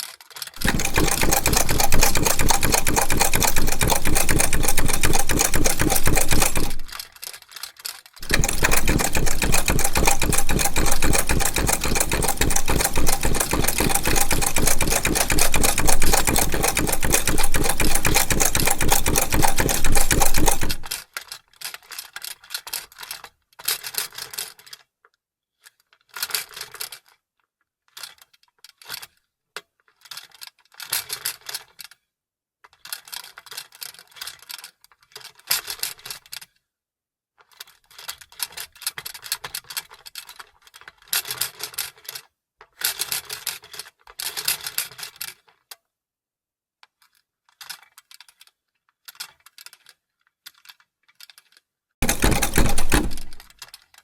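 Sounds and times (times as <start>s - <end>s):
sewing machine stitching: 0.6s - 7.0s, 8.2s - 21.0s, 52.0s - 53.6s.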